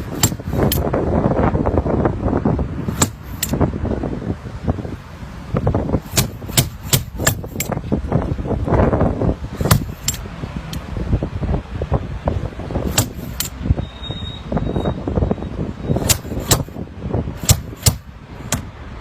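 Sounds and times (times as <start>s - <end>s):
steady low rumble: 0.0s - 19.0s.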